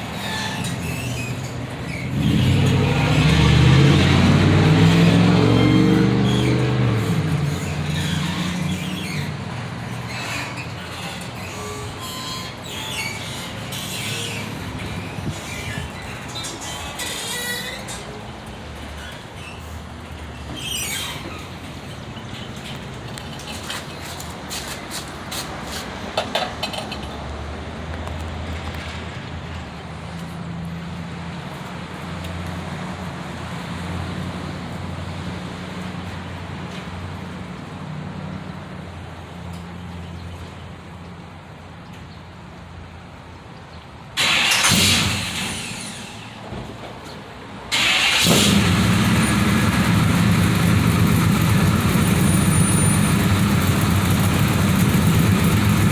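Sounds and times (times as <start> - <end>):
car engine exhaust: 2.1 - 8.2, 47.8 - 55.9.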